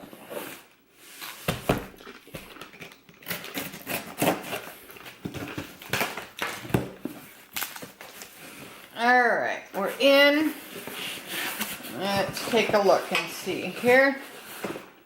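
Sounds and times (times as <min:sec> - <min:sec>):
cardboard scraping and crackling: 0:00.0 - 0:09.0, 0:09.8 - 0:15.0
blade cutting packing tape: 0:02.6 - 0:06.6.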